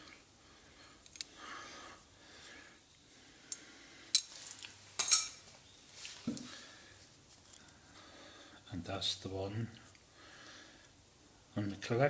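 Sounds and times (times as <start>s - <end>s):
metallic clinks and taps: 4.1s - 5.4s.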